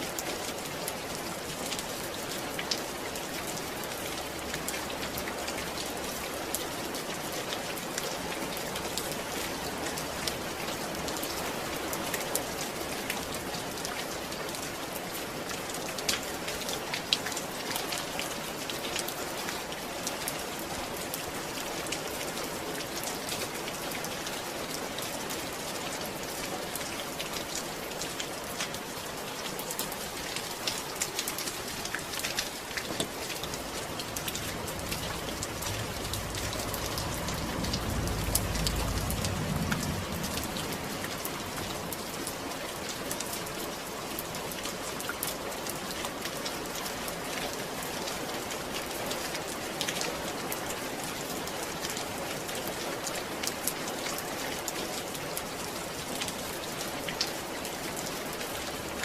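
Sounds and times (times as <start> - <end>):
steady rain falling: 0.0 - 59.0
low rumble: 33.1 - 42.4.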